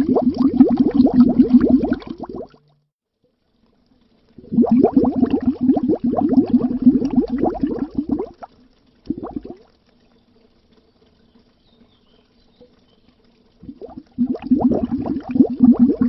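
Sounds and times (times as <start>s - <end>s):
bubbles gurgling under water: 0.0s - 2.6s, 4.4s - 9.8s, 13.6s - 16.0s.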